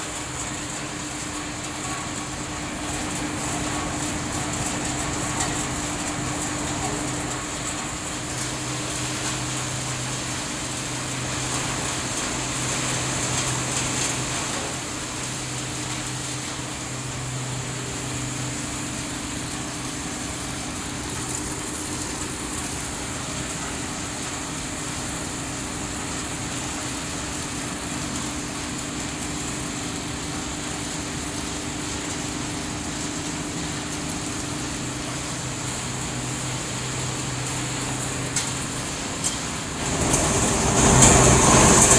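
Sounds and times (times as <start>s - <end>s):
machinery hum: 29.0s - 41.9s.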